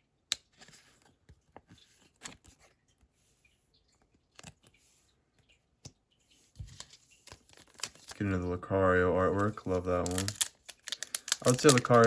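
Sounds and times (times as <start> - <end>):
trading cards rustling: 6.6 - 8.4, 9.2 - 12.0.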